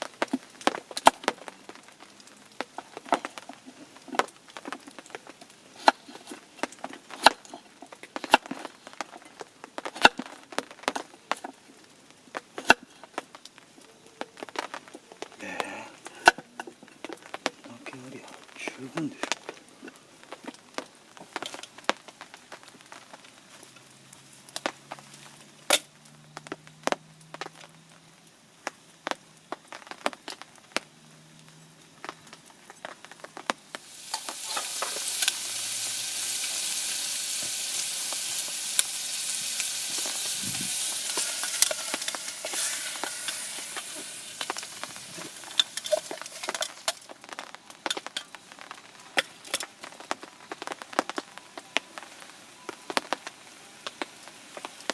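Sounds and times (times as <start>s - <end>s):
food sizzling in a hot pan: 0.0s - 13.8s, 20.2s - 27.8s, 33.0s - 54.9s
cooking utensils clicking: 34.0s - 35.8s, 38.3s - 47.1s.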